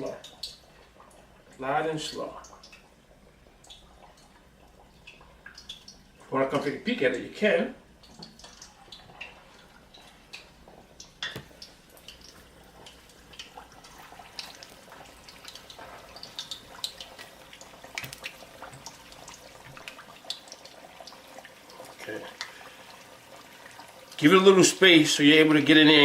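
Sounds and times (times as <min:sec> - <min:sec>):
oil crackling and popping: 0:00.0 - 0:01.6, 0:02.4 - 0:06.3, 0:08.0 - 0:24.3
plantains sizzling in oil: 0:08.4 - 0:26.0.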